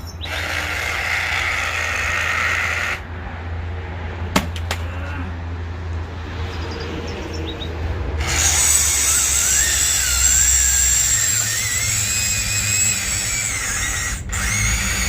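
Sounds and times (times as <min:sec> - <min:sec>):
reciprocating saw motor whine: 0:08.2 - 0:15.0.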